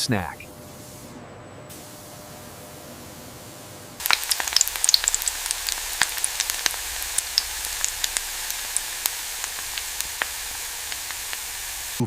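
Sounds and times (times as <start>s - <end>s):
steady high hiss: 0.0s - 12.0s
sharp crackles and ticks: 4.0s - 12.0s.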